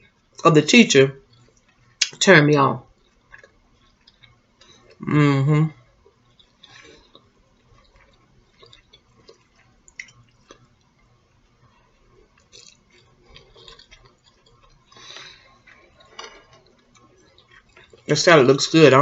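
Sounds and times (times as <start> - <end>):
person chewing food: 1.2 - 2.2, 2.8 - 18.2.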